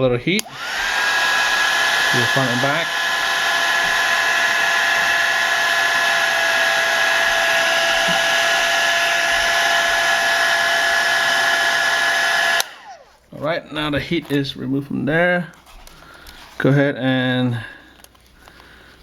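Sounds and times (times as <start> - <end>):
heat gun blowing hot air: 0.4 - 13.2.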